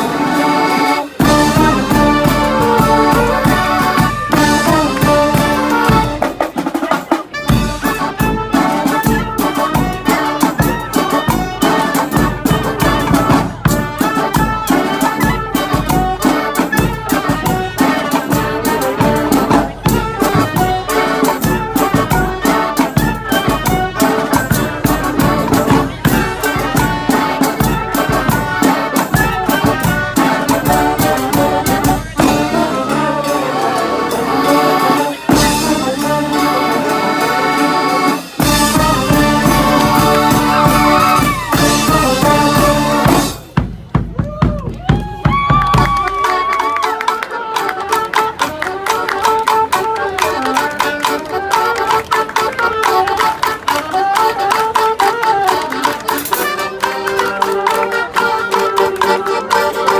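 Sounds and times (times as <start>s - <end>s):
steady drum beat: 0.0s - 46.8s
brass band horns: 0.0s - 59.9s.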